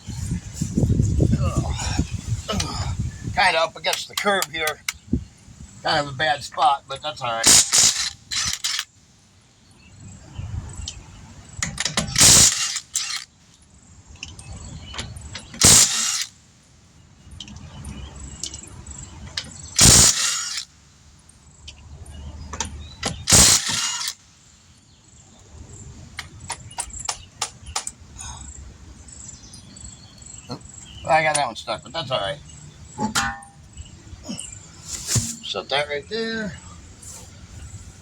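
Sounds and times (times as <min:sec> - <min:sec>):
quick clicks: 0:03.9 - 0:05.0, 0:07.5 - 0:08.9, 0:12.2 - 0:13.3, 0:19.8 - 0:20.7, 0:23.3 - 0:24.2
loud short metallic bursts: 0:07.4 - 0:08.8, 0:12.1 - 0:13.2, 0:15.6 - 0:16.3, 0:19.8 - 0:20.7, 0:23.3 - 0:24.2.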